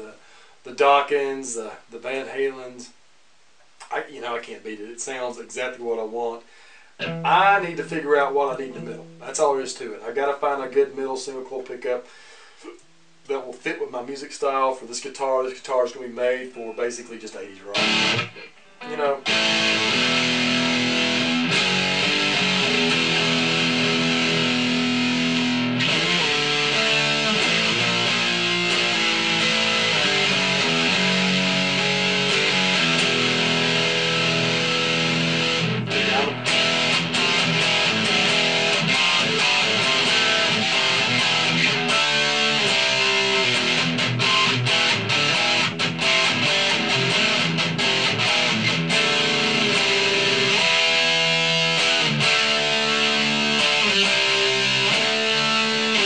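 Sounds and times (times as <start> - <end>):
electric guitar chords and notes: 7.0 - 9.4, 17.7 - 56.0.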